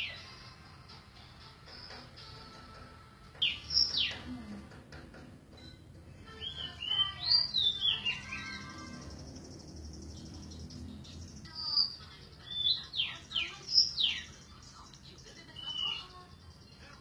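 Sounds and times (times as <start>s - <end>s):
bird singing high notes: 6.3s - 14.5s, 15.5s - 16.7s.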